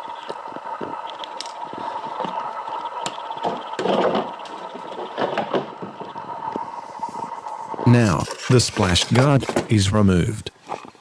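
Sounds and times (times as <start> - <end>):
steady hum: 0.0 - 10.6
plastic scraping: 0.3 - 9.8
plastic knocks and clicks: 3.0 - 6.6.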